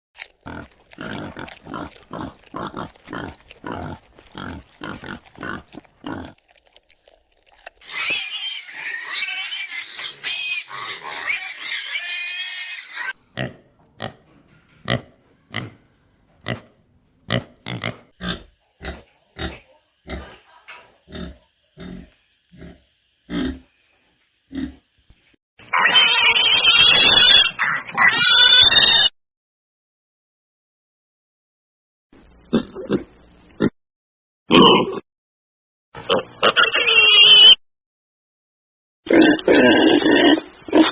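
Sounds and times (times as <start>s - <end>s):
pig grunting: 0.4s - 6.4s, 14.9s - 23.7s, 24.5s - 24.8s, 39.1s - 40.9s
pig squealing: 7.8s - 14.2s, 17.3s - 23.7s, 24.5s - 24.8s, 25.6s - 29.1s, 36.0s - 37.6s, 39.1s - 40.9s.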